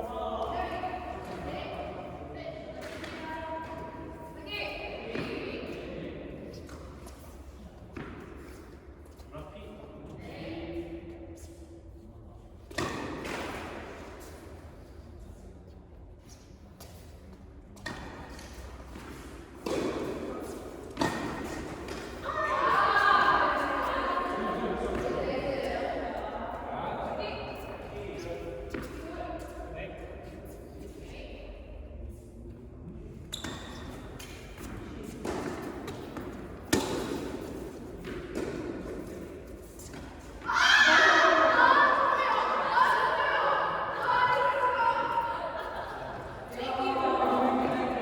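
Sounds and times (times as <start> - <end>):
tennis balls struck by rackets: 17.8 - 22.2, 34.2 - 40.2
tennis balls bouncing on court: 17.8 - 24.0, 33.4 - 40.3
voices: 22.2 - 28.2, 40.4 - 48.0.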